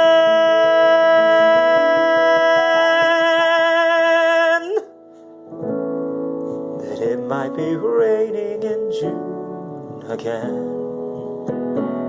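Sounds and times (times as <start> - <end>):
man singing a long note: 0.0 - 4.9, 6.8 - 10.8.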